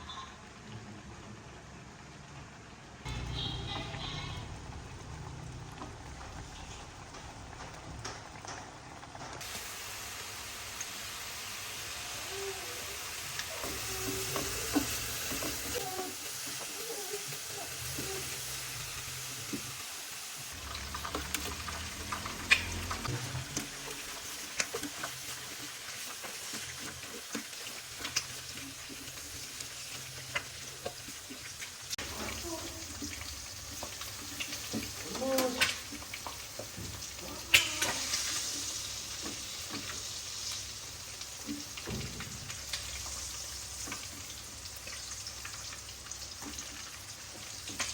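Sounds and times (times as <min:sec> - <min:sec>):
food sizzling in hot oil: 0:03.0 - 0:47.9
utensil clicking against pan: 0:20.8 - 0:29.3.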